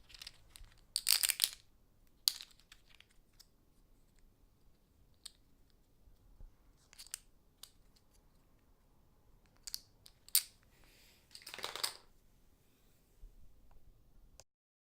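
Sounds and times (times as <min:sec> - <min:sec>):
poker chips clicking: 0:00.0 - 0:01.6, 0:02.2 - 0:03.5, 0:06.8 - 0:08.2, 0:09.5 - 0:10.6, 0:11.3 - 0:12.0.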